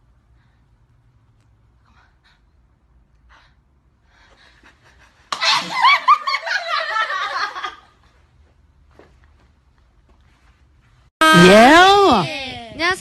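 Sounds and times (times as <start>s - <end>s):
people laughing: 4.6s - 7.9s.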